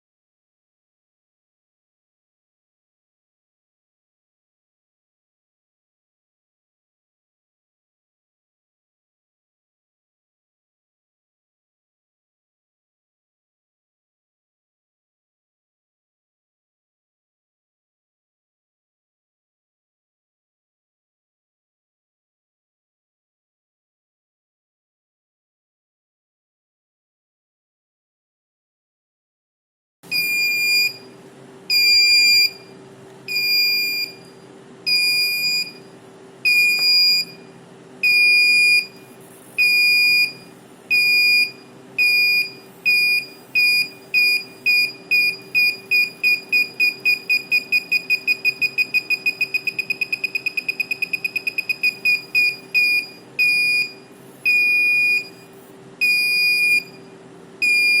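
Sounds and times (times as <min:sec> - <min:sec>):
electronic buzzer beeping: 0:30.1 - 0:35.9, 0:36.5 - 0:39.0, 0:39.6 - 0:57.0, 0:57.6 - 0:58.0.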